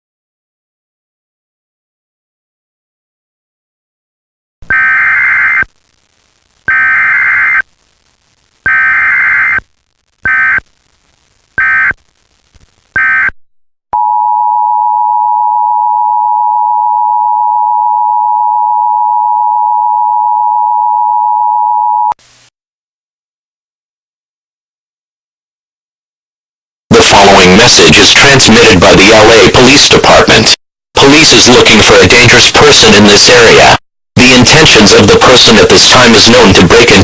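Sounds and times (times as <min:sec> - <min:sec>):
digital data header bursts: 0:04.7 - 0:05.7, 0:06.7 - 0:07.6, 0:08.7 - 0:09.6, 0:10.2 - 0:10.6, 0:11.6 - 0:12.0
brief crackle: 0:12.0 - 0:13.0.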